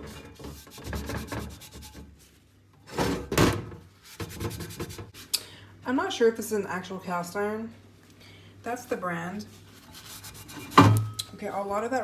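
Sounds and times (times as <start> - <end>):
scrubbing cast iron pan: 0.0 - 2.3, 4.0 - 5.2, 9.4 - 11.1.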